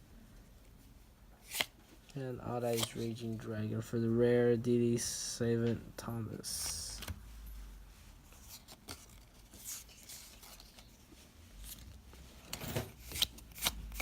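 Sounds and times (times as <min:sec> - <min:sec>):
trading cards rustling and clicking: 0:01.4 - 0:01.8, 0:02.6 - 0:03.3, 0:08.3 - 0:14.0.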